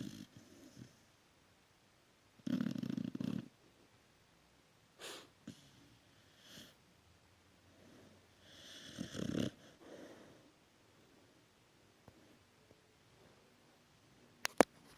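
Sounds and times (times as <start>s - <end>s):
dog snoring: 0.0s - 1.1s, 2.4s - 3.6s, 5.4s - 6.8s, 7.8s - 10.3s.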